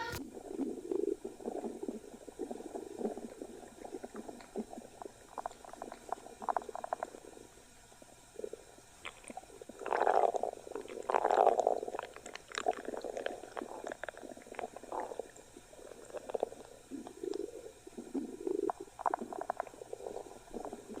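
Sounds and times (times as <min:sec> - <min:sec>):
stomach growling and gurgling: 0:00.0 - 0:21.0.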